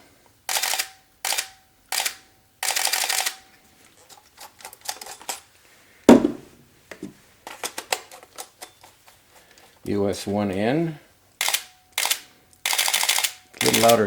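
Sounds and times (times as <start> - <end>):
camera shutter and motor drive: 0.5 - 3.4, 11.4 - 14.0
loud knock: 6.1 - 6.5.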